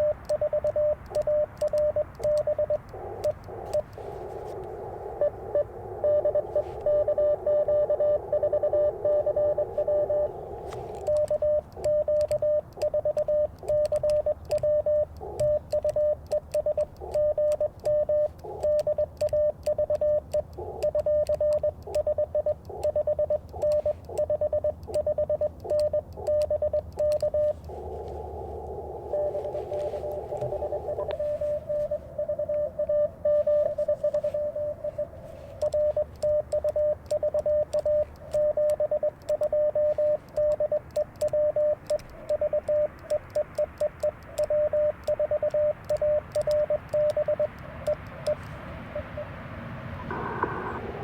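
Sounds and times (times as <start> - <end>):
steady tone: 0.0 - 16.2, 26.2 - 43.2, 46.6 - 51.0
morse code beeps: 0.0 - 49.3, 50.0 - 51.0.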